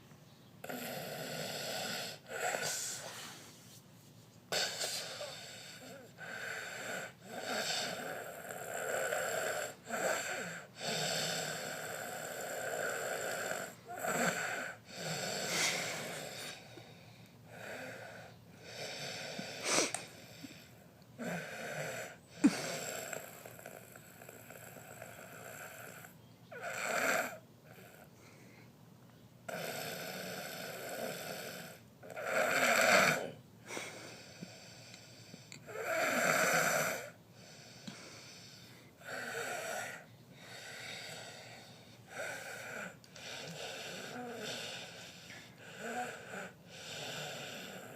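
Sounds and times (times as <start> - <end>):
person snoring: 4.5 - 16.8, 21.2 - 28.0, 29.5 - 35.0, 35.6 - 47.9.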